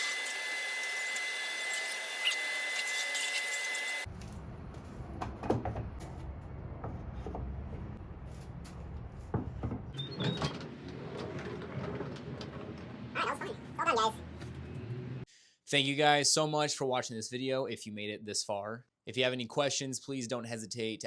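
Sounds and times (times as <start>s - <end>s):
shop vacuum whining: 0.0s - 4.1s
low rumble: 4.1s - 9.9s.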